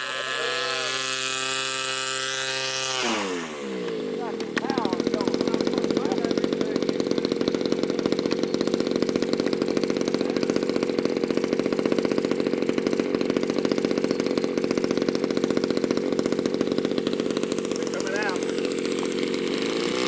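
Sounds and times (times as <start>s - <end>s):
model airplane engine buzzing: 0.0s - 20.0s.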